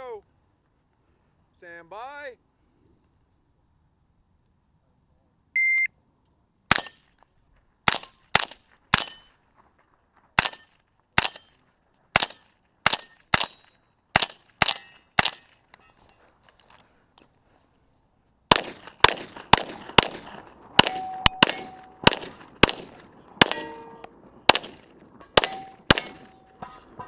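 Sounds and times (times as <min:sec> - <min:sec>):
shot timer beep: 0:05.6 - 0:05.9, 0:20.9 - 0:22.0
rifle shots: 0:06.7 - 0:07.0, 0:07.9 - 0:09.3, 0:10.4 - 0:11.5, 0:12.2 - 0:15.6, 0:18.5 - 0:26.6.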